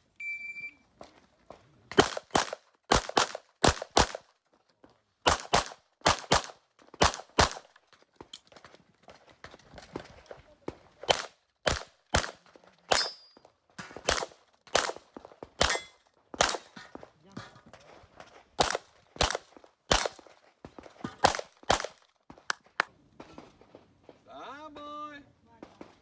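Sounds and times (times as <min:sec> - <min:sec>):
rapid handgun shots: 0:02.0 - 0:04.2, 0:05.2 - 0:07.7, 0:11.0 - 0:13.2, 0:13.8 - 0:17.0, 0:18.6 - 0:20.3, 0:21.1 - 0:22.0.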